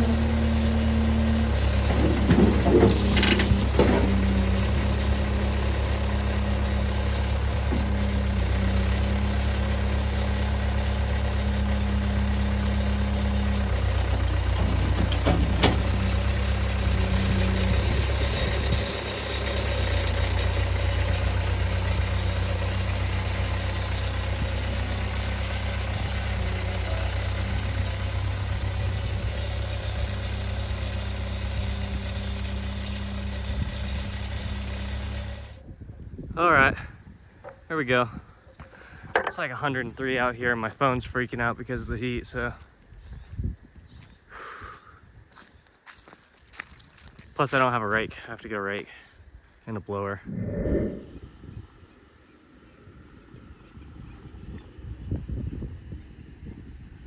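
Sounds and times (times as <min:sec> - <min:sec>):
tractor engine idling: 0:00.0 - 0:35.6.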